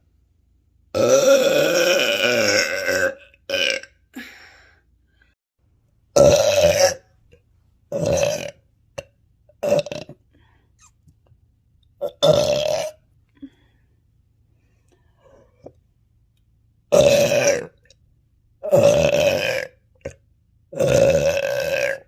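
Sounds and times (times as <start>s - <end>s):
woman burping: 1.0s - 4.4s, 6.2s - 7.1s, 9.6s - 10.2s, 12.0s - 13.0s.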